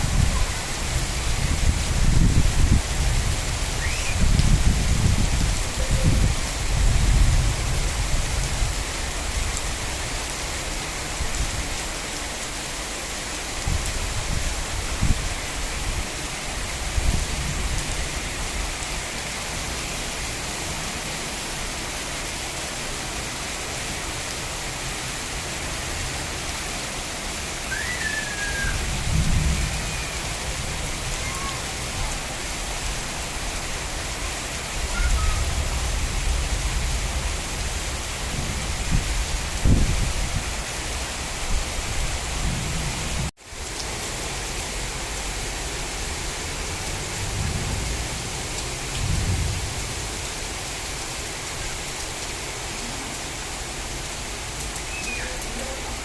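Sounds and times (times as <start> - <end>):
steady rain hiss: 0.0 - 56.0
low rumbles of thunder: 28.8 - 30.8, 47.1 - 50.2.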